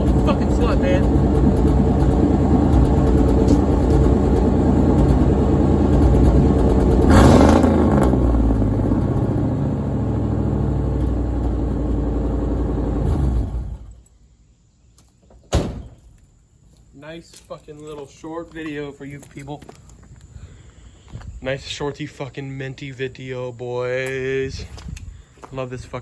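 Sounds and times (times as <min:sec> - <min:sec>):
truck engine idling: 0:00.0 - 0:14.0.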